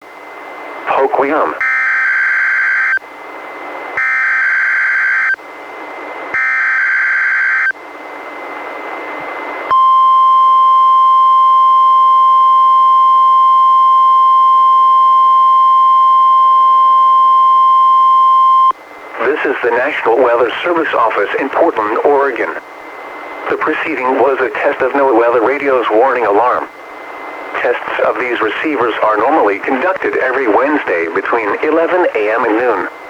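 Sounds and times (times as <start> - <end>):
radio hiss: 0.8 - 1.6, 19.1 - 33.0
steady alarm tone: 1.6 - 3.1, 4.0 - 5.4, 6.3 - 7.8.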